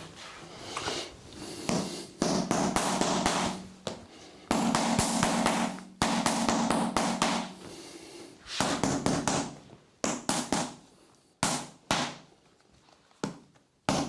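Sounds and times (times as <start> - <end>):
percussion massager tapping: 1.6 - 7.6.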